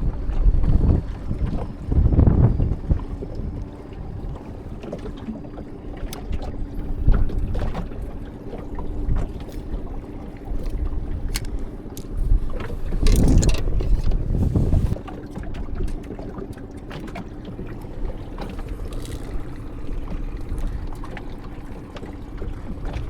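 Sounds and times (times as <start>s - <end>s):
wind gusting on microphone: 0.0s - 4.4s, 10.8s - 15.0s.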